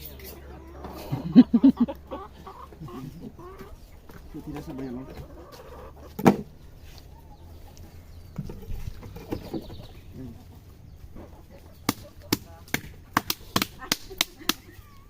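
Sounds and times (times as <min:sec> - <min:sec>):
birds calling: 0:00.0 - 0:15.0.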